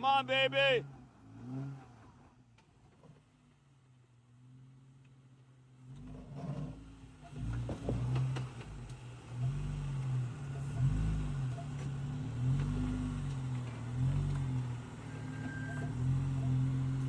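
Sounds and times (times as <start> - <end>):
engine revving: 0.0 - 2.4, 5.8 - 17.0.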